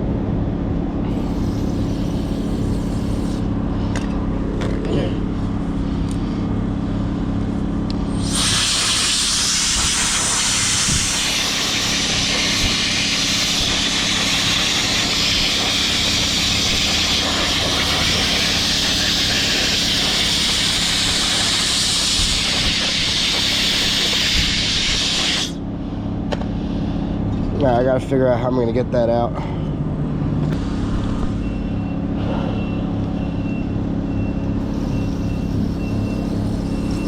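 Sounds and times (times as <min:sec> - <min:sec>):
pressurised jet hissing: 0:01.1 - 0:03.5, 0:08.1 - 0:25.6.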